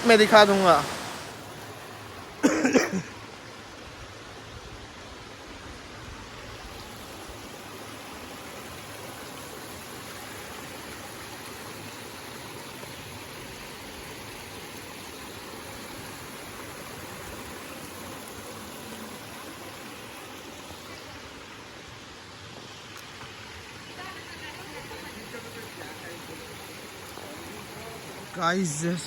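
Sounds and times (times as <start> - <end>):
waterfall rushing water: 0.0 - 29.0.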